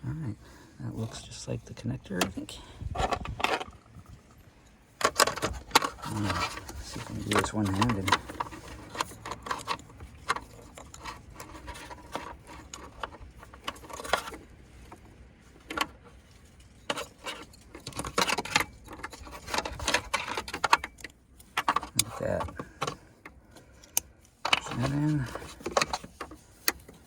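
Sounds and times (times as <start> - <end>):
plastic connectors clicking and rattling: 5.0 - 15.0, 15.6 - 27.0.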